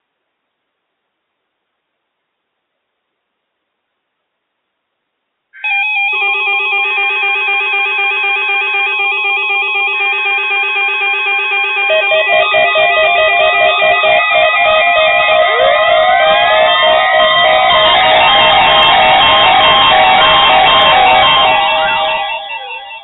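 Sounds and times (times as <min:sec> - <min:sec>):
pulsing warble alarm: 0:05.6 - 0:23.0
weather radio alarms warbling beeps: 0:11.8 - 0:23.0.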